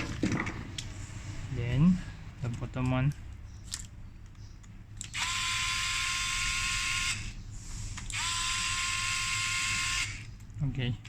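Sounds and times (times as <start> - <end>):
power screwdriver motor whining: 5.1 - 7.3, 8.1 - 10.3.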